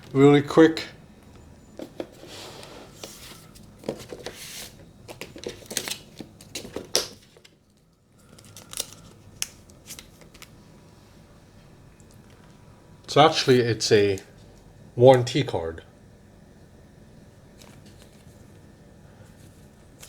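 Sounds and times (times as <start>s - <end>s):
cardboard and paper rustling: 1.8s - 10.6s, 17.6s - 18.6s.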